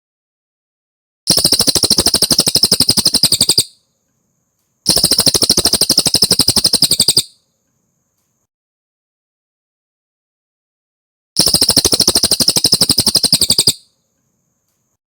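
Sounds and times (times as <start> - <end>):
bird singing rapid high trills: 1.3 - 3.9, 4.9 - 7.4, 11.4 - 13.9.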